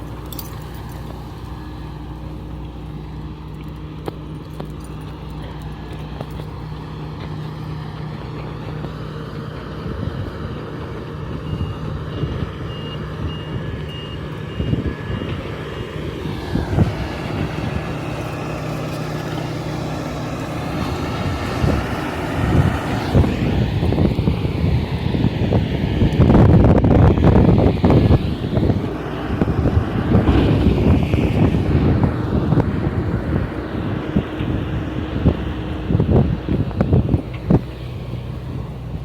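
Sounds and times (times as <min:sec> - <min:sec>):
diesel engine running: 0:00.0 - 0:39.0
wind noise: 0:09.5 - 0:39.0
reversing alarm beeping: 0:11.3 - 0:15.6.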